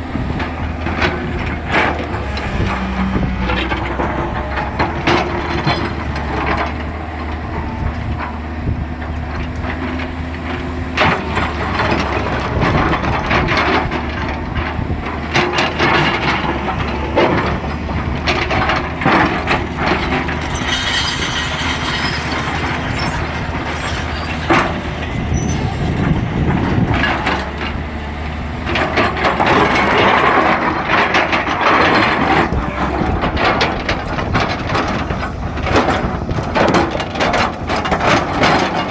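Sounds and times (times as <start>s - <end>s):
diesel engine running: 0.0s - 38.9s
stones clattering and scraping: 18.4s - 25.6s.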